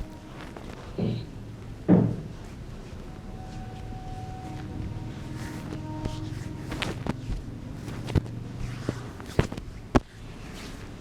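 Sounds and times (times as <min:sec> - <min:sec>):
hands slapping body: 0:07.8 - 0:10.8.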